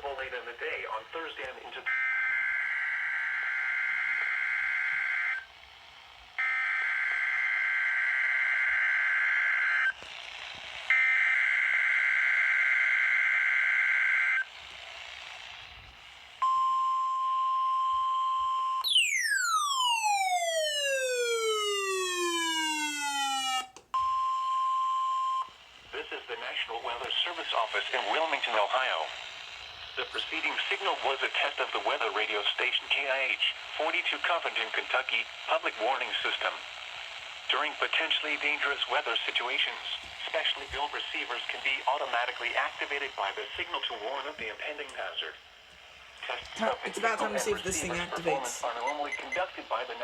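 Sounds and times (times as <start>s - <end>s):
steady warning alarm tone: 1.9s - 5.5s, 6.4s - 10.0s, 16.4s - 25.6s, 46.6s - 50.0s.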